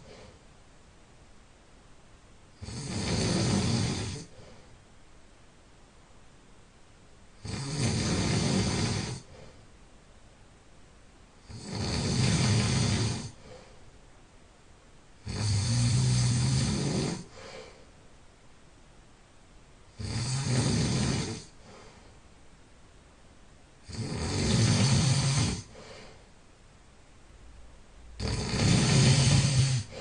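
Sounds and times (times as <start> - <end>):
quiet breathing: 0.0 - 0.7, 2.5 - 5.0, 7.5 - 9.9, 11.4 - 14.2, 15.2 - 18.2, 19.9 - 22.6, 23.8 - 26.5, 28.1 - 30.0
person snoring loudly: 2.6 - 4.4, 7.4 - 9.4, 11.4 - 13.5, 15.2 - 17.4, 20.0 - 21.6, 23.8 - 25.8, 28.2 - 30.0.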